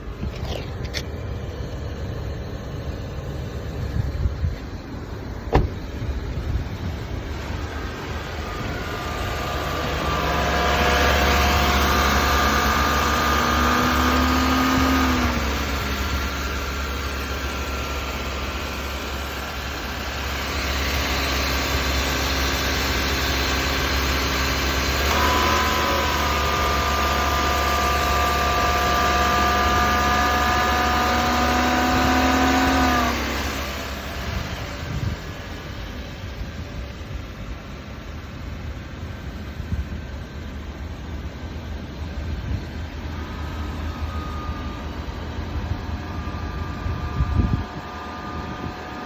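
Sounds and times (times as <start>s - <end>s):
ac compressor humming and whining: 0.0s - 49.0s.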